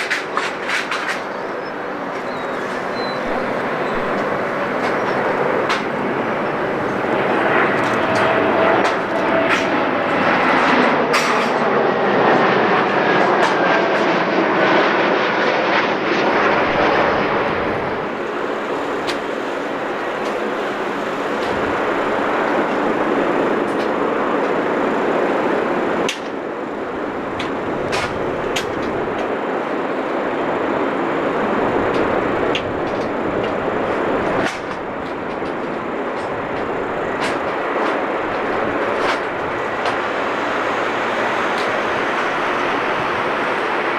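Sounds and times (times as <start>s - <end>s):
aircraft engines flying past: 0.0s - 43.9s.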